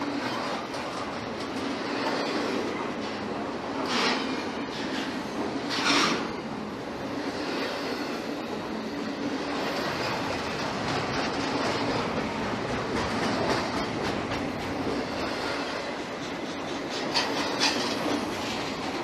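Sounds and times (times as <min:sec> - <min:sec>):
train wheels rolling on rails: 0:00.0 - 0:19.0
clicks over rail joints: 0:10.0 - 0:19.0.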